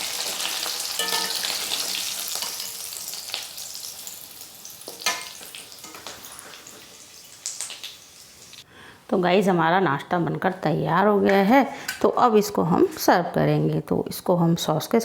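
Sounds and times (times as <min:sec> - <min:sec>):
snacks deep-frying in hot oil: 0:00.0 - 0:08.7
metal utensil clink: 0:00.9 - 0:02.9, 0:05.0 - 0:06.1.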